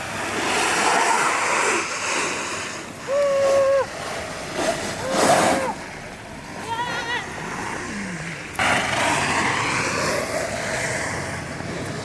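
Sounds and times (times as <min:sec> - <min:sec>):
snowboard carving over snow: 0:00.0 - 0:12.0.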